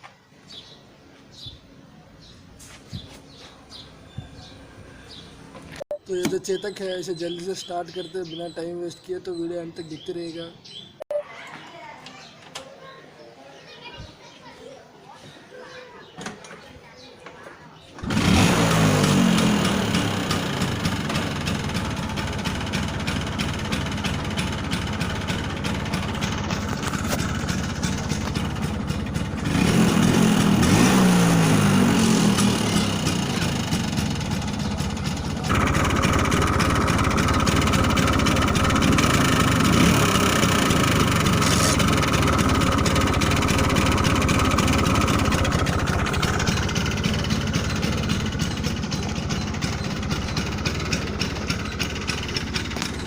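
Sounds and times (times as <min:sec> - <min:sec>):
scooter engine idling and revving: 0:17.9 - 0:53.0.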